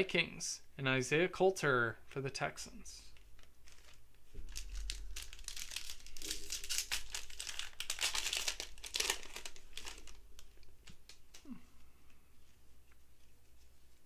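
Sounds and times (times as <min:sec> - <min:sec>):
plastic wrapper crinkling: 0:03.1 - 0:11.4.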